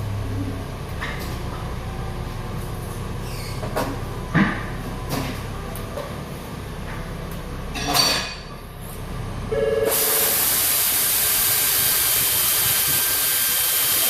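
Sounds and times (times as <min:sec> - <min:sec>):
air blow gun hissing: 0:09.9 - 0:14.0.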